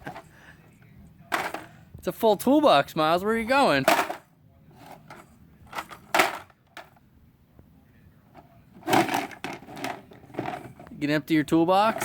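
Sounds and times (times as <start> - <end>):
toys knocking and rattling: 1.3 - 1.8, 3.8 - 7.0, 8.4 - 11.0, 11.8 - 12.0.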